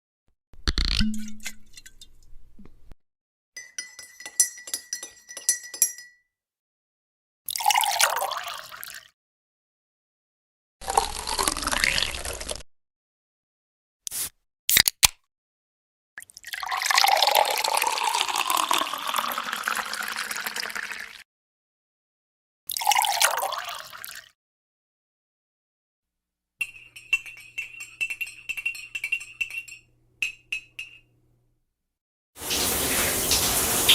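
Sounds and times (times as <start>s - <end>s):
glass clinking: 3.6s - 6.3s, 26.6s - 31.1s
running water pouring: 10.8s - 12.6s, 16.4s - 21.2s, 32.4s - 33.9s
splashing water: 32.4s - 33.9s.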